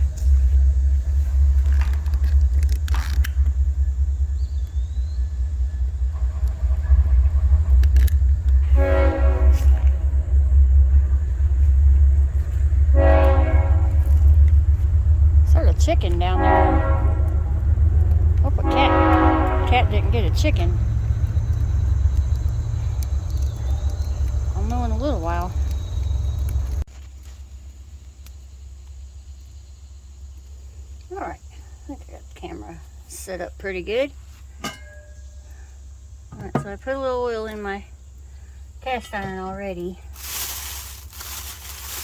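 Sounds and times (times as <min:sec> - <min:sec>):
steady low rumble: 0:00.0 - 0:26.9, 0:27.8 - 0:42.0
quiet outdoor background: 0:00.0 - 0:42.0
train horn blowing: 0:08.6 - 0:10.4, 0:12.8 - 0:14.5, 0:15.6 - 0:20.8.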